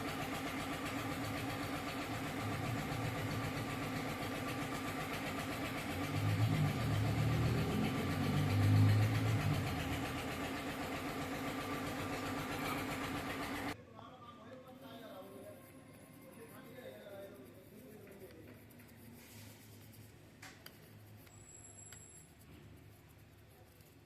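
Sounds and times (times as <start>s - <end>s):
machine hum with fast buzz: 0.0s - 13.8s.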